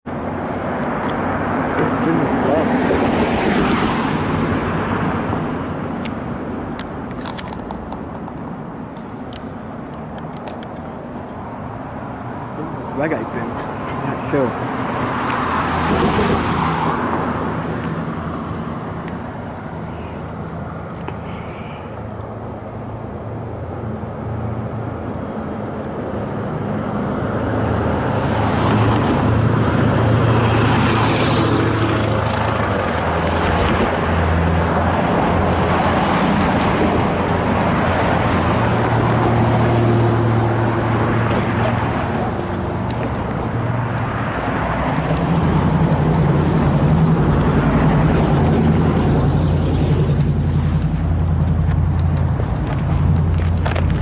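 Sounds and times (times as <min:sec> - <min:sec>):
vehicles passing: 0:00.0 - 0:54.0.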